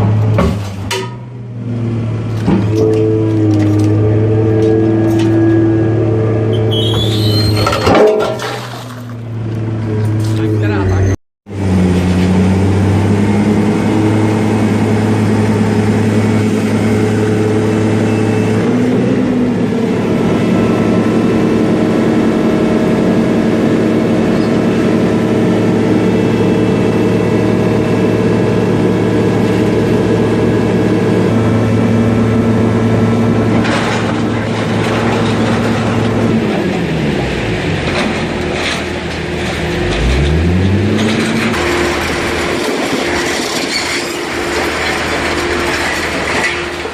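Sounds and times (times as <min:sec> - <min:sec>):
metal clanking: 0:07.0 - 0:09.2.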